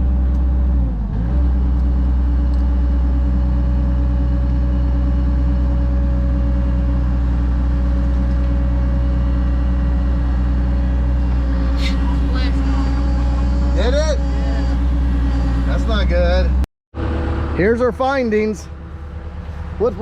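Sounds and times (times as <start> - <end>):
excavator diesel engine running: 0.0 - 20.0.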